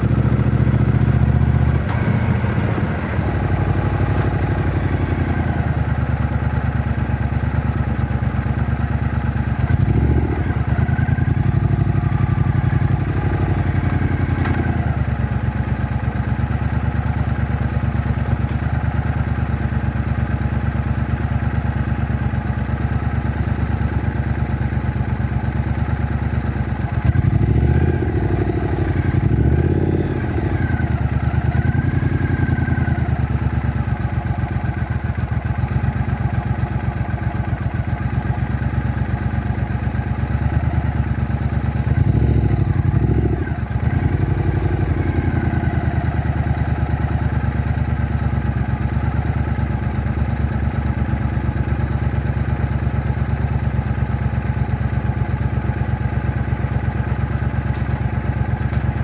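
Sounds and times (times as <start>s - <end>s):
motorcycle engine revving: 0.0s - 19.6s, 25.7s - 52.5s.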